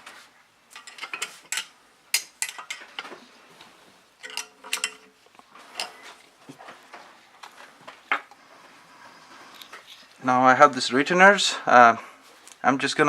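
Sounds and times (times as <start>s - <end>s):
metal tools clinking: 0.7s - 3.2s, 4.2s - 6.2s
metallic ring: 4.2s - 5.2s.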